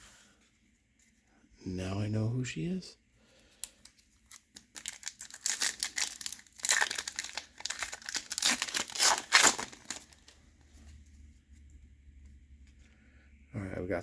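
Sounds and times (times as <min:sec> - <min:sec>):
foil wrapper tearing and crinkling: 0:03.6 - 0:10.4.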